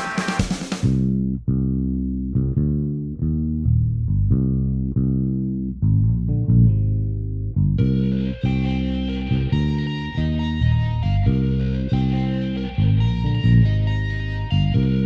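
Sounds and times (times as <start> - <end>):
guitar: 0.0 - 0.8, 7.8 - 15.0
bass guitar line: 0.0 - 15.0.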